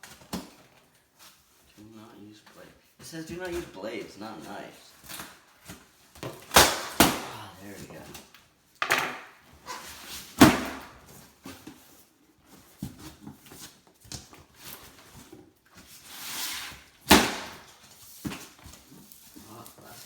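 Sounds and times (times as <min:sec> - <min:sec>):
packing material rustling: 0:17.6 - 0:20.0.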